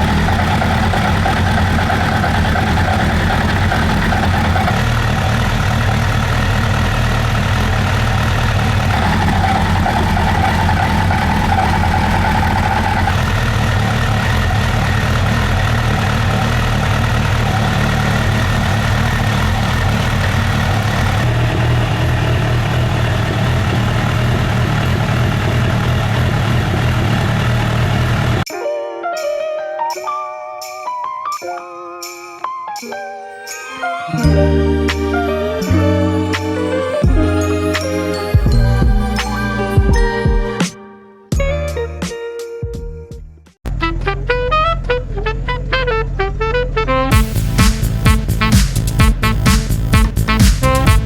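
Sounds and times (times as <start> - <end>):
motorcycle engine idling: 0.0 - 28.5, 47.1 - 51.0.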